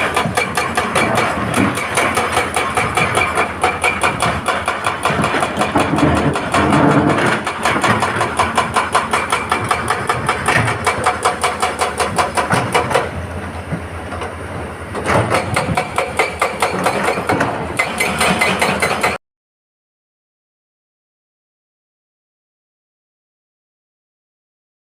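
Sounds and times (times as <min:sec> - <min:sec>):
diesel engine running: 0:00.0 - 0:15.9
hydraulic rock breaker hammering: 0:00.0 - 0:19.2.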